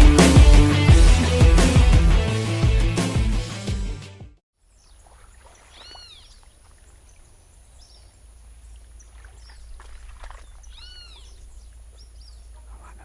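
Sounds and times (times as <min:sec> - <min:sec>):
short bird chirps: 0:04.6 - 0:12.6
loud arched bird call: 0:04.8 - 0:06.6, 0:10.4 - 0:11.5.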